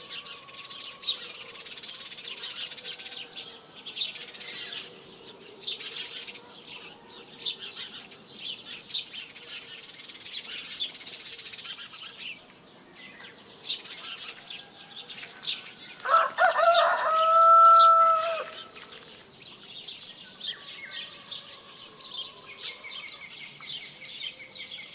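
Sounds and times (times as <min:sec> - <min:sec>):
small birds chirping: 0:00.0 - 0:24.9
rooster crowing: 0:16.0 - 0:18.7, 0:20.5 - 0:23.1.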